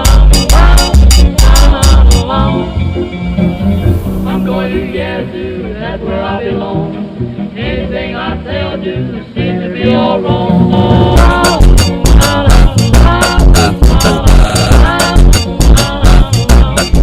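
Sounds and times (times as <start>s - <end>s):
song with vocals over a beat: 0.0s - 3.0s, 3.8s - 7.0s, 7.8s - 17.0s.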